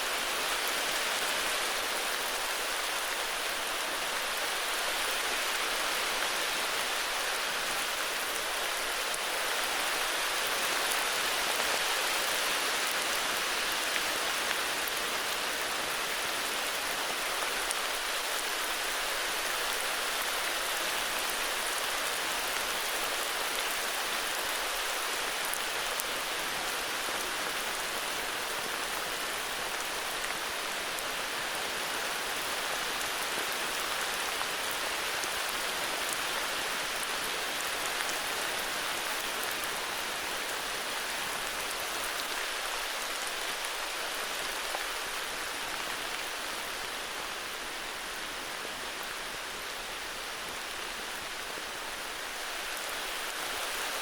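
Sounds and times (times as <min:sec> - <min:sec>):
heavy rain on foliage: 0:00.0 - 0:54.0.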